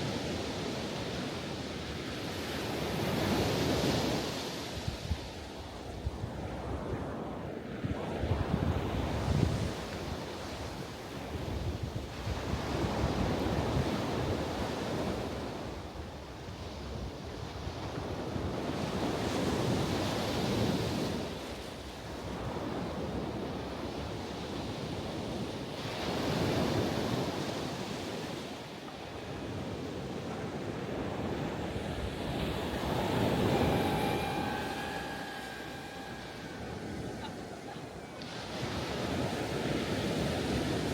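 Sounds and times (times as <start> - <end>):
wind buffeting microphone: 29.3 - 40.9
ocean waves breaking: 29.4 - 40.9.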